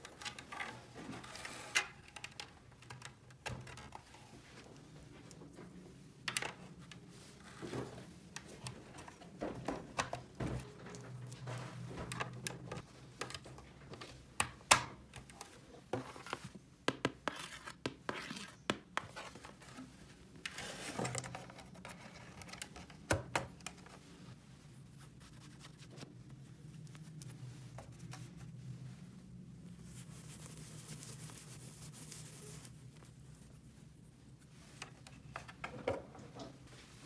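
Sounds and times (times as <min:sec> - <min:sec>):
scratching and crinkling: 0:15.1 - 0:37.0.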